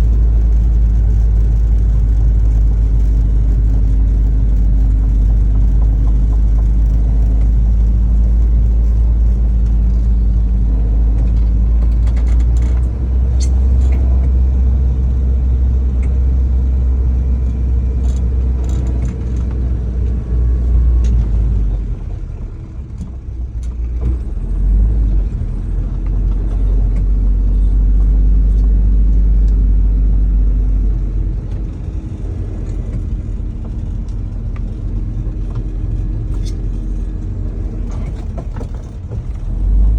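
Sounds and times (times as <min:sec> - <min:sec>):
light clicks and rattles: 0:00.0 - 0:14.4, 0:17.4 - 0:21.8
car engine humming: 0:00.0 - 0:39.9
deep rumble: 0:00.0 - 0:39.9.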